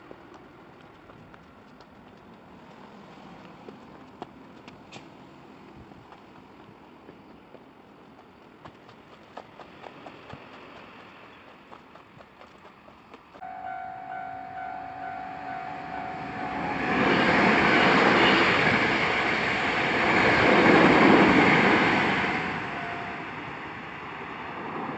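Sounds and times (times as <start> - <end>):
steady high tone: 13.4 - 20.3, 21.0 - 23.4
electric train passing: 13.4 - 24.9.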